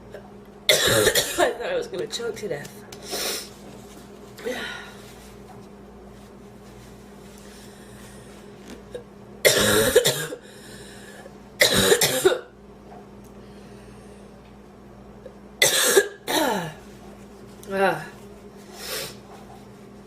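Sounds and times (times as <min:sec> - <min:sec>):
woman coughing hard: 0:00.7 - 0:01.7, 0:09.4 - 0:10.4, 0:11.6 - 0:12.6, 0:15.6 - 0:16.8.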